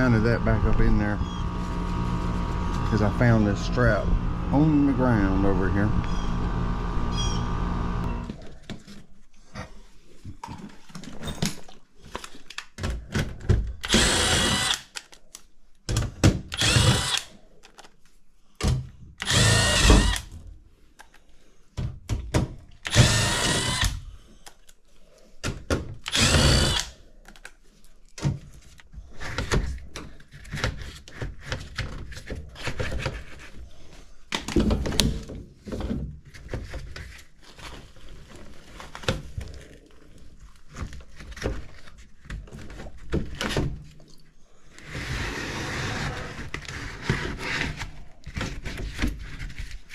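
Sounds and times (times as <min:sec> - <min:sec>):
power drill whining: 0:00.0 - 0:08.4, 0:13.8 - 0:14.9, 0:16.5 - 0:17.4, 0:19.2 - 0:20.3, 0:22.8 - 0:24.0, 0:26.1 - 0:26.9.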